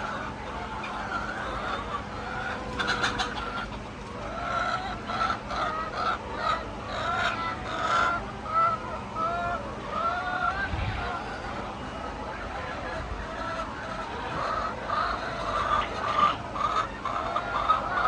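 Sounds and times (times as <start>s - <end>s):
faint steady hum: 0.0s - 18.0s
hens clucking: 0.0s - 18.0s.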